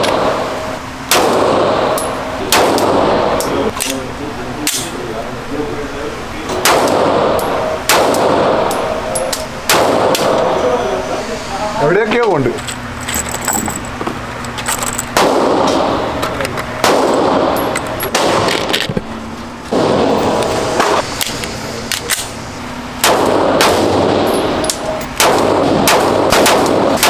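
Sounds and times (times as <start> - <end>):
gunshots: 1.1 - 1.8, 2.5 - 3.1, 6.6 - 8.9, 9.6 - 10.5, 15.1 - 16.0, 16.8 - 18.7, 19.7 - 21.0, 23.0 - 27.0.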